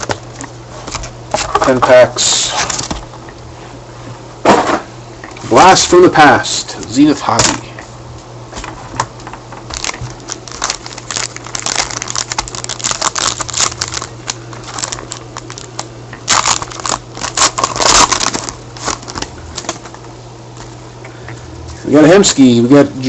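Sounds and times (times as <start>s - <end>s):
wrapper crinkling and tearing: 9.7s - 19.8s.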